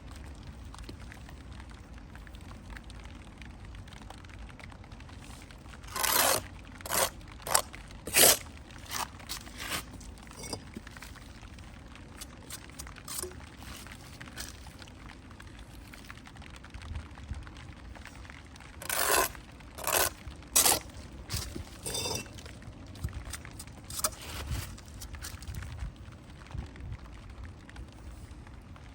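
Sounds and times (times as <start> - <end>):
hand tool scraping brick: 5.9 - 11.2, 12.2 - 14.6, 18.8 - 22.5, 23.1 - 25.4.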